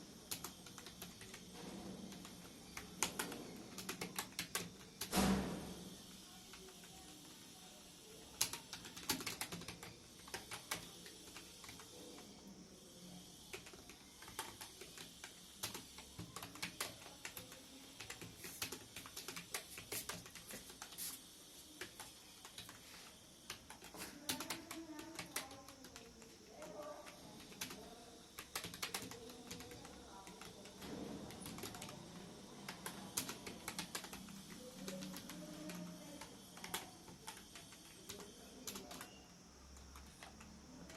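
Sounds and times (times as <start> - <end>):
keyboard typing: 0.0 - 12.5, 13.3 - 40.9.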